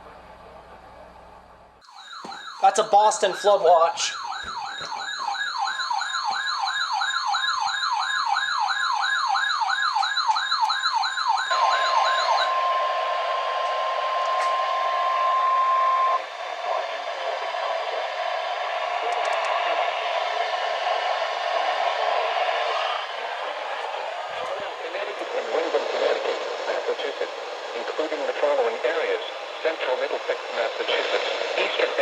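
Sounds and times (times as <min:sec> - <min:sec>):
warbling siren-like alarm: 0:01.8 - 0:27.9
radio noise hiss: 0:16.2 - 0:32.0.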